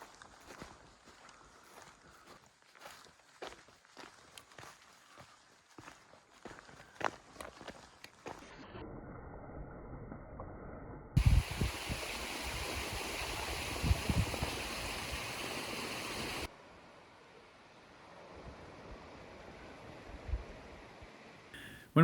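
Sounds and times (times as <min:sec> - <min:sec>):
wind thumps on microphone: 0:11.2 - 0:15.3
mountain stream rushing: 0:11.2 - 0:16.5.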